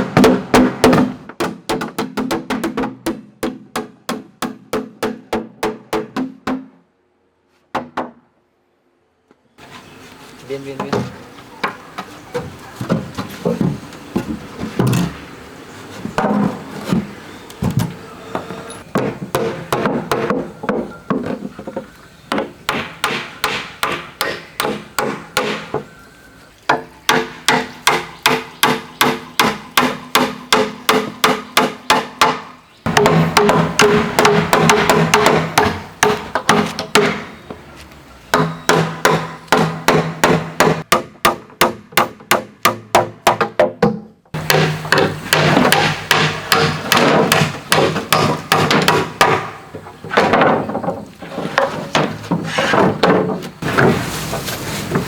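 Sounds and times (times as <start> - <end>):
hammer striking wood: 0.0 - 6.8, 7.7 - 8.2, 18.9 - 21.4, 22.3 - 25.9, 26.7 - 37.4, 38.3 - 54.0.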